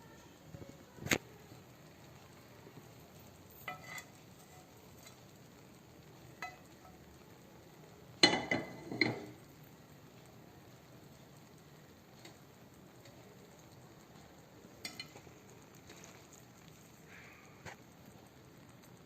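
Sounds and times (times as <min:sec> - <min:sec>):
metal cookware clinking: 0:03.2 - 0:05.4, 0:06.2 - 0:07.2, 0:08.2 - 0:09.5, 0:14.7 - 0:16.0.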